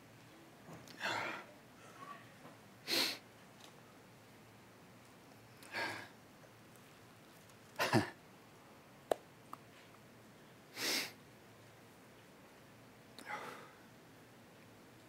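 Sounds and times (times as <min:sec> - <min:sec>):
person exhaling: 0:05.7 - 0:06.1, 0:13.2 - 0:13.8.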